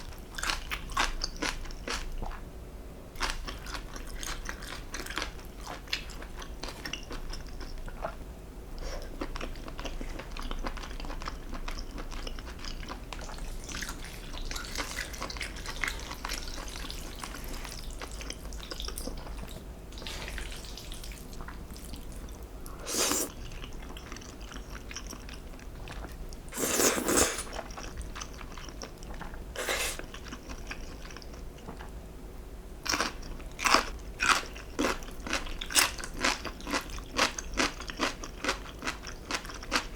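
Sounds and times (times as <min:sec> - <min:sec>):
chewing: 0:08.8 - 0:31.9, 0:32.9 - 0:39.9.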